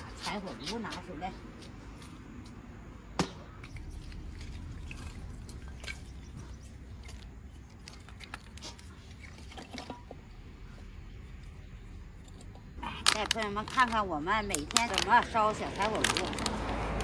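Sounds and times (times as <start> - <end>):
low steady rumble: 3.6 - 17.0.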